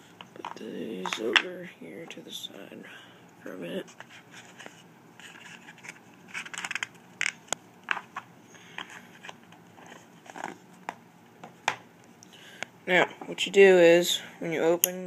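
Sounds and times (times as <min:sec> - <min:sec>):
crinkly rustle: 0:03.8 - 0:07.4.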